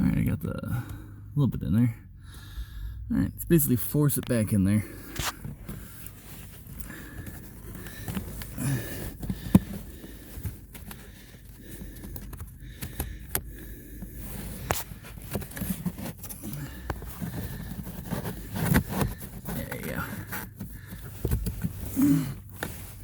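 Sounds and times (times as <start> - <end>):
steady low hum: 0.7 - 23.0
filter scraping and knocking: 14.3 - 21.9.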